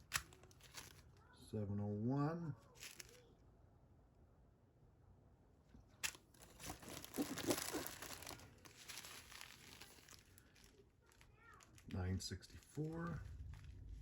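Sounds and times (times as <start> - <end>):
plastic bags crinkling: 0.0 - 1.2, 2.8 - 3.2, 6.0 - 14.0.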